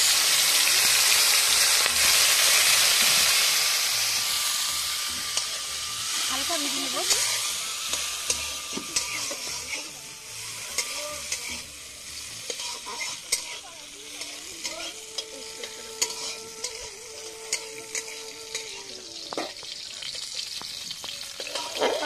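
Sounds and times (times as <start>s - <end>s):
nuts sizzling in hot oil: 0.0s - 22.0s
spatula scraping pan: 5.1s - 22.0s.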